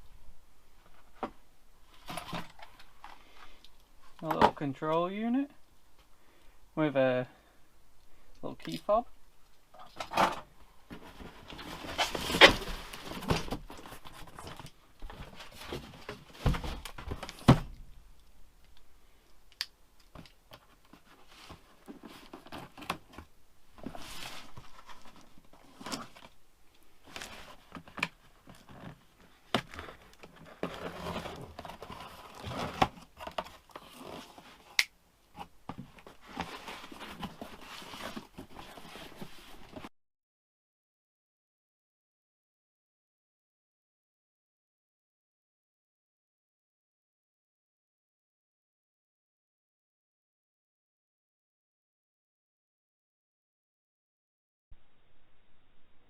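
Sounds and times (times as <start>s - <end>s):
packaging crinkling and rustling: 27.0s - 34.8s.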